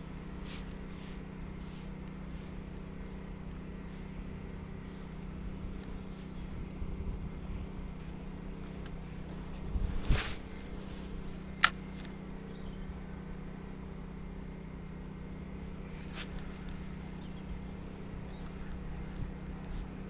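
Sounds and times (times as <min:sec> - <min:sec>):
low mechanical hum: 0:00.0 - 0:20.0
sharp click: 0:10.0 - 0:12.2.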